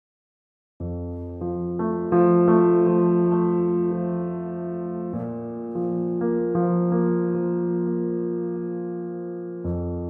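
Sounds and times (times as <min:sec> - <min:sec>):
calm electric piano music: 0:00.8 - 0:10.0.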